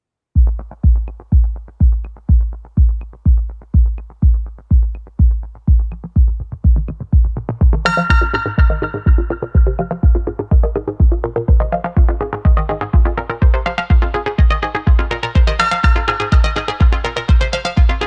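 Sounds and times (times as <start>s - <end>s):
electronic dance music: 0.4s - 18.0s
steady kick drum: 0.4s - 18.0s
synth and cymbal layers: 7.4s - 18.0s.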